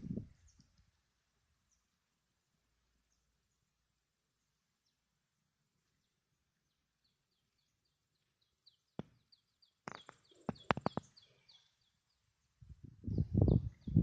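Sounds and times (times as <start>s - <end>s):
small bird chirping: 5.9s - 14.0s
sharp clicks and knocks: 9.8s - 11.1s.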